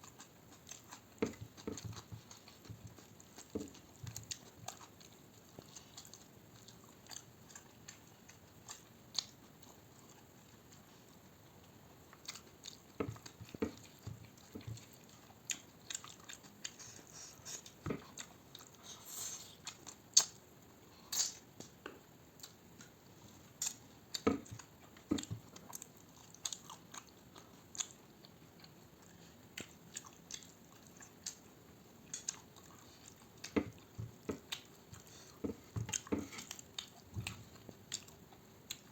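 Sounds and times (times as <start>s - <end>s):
person chewing food: 0.0s - 38.9s
wet mouth clicks and smacks: 20.2s - 20.4s, 21.1s - 21.8s.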